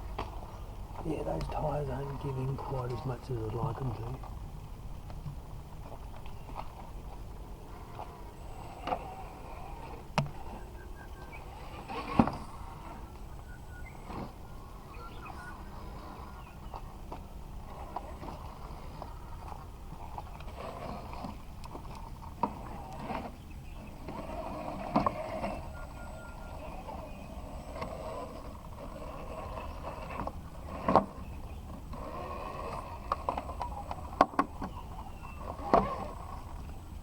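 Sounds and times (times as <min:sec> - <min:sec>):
electric motor and gears whirring: 0:07.7 - 0:37.0.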